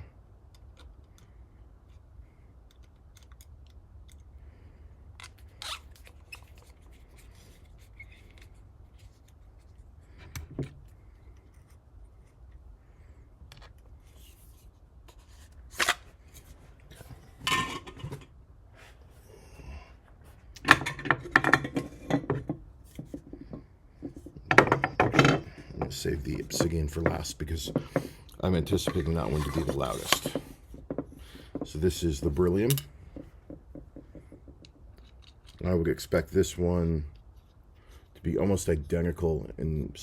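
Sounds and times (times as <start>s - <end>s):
metal parts scraping: 28.6s - 30.7s.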